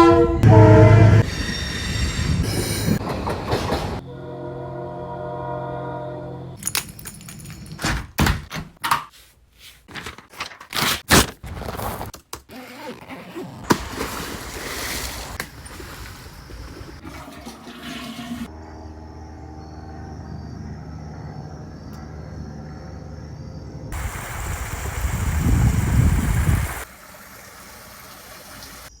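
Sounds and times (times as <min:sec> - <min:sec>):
rushing water-like noise: 0:13.7 - 0:18.5, 0:24.0 - 0:29.0.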